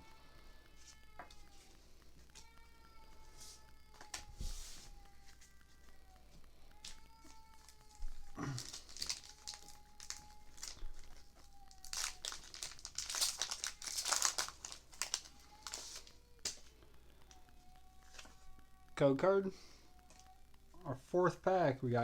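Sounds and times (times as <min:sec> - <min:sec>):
foil wrapper crinkling and tearing: 0:06.7 - 0:18.4.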